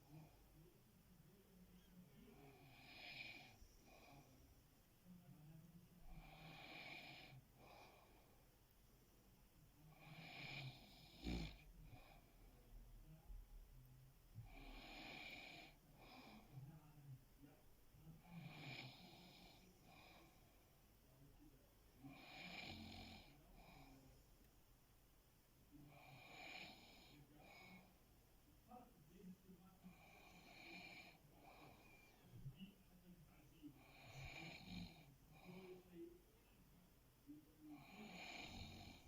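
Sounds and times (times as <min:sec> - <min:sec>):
person snoring faintly: 0:01.5 - 0:08.4, 0:09.8 - 0:12.6, 0:14.4 - 0:17.5, 0:18.1 - 0:20.6, 0:21.4 - 0:24.3, 0:25.8 - 0:28.0, 0:29.6 - 0:32.6, 0:33.6 - 0:36.1, 0:37.3 - 0:39.0.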